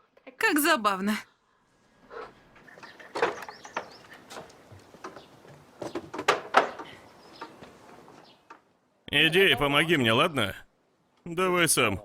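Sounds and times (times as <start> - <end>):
irregular knocks and clatters: 2.6 - 8.7.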